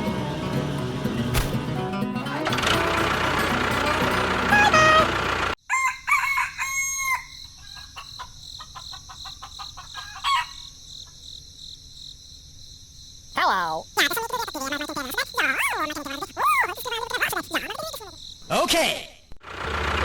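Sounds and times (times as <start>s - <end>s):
music: 0.0s - 5.5s
rooster crowing: 5.6s - 8.0s
chicken clucks and calls: 5.8s - 10.7s, 13.4s - 18.2s.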